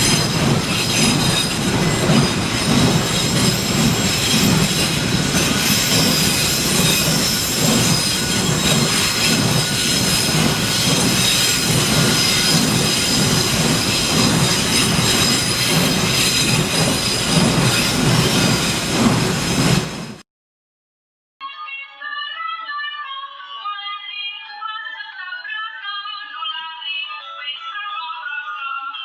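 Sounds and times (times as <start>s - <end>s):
high wind whistling: 0.0s - 20.2s
storm wind roaring: 0.0s - 20.2s.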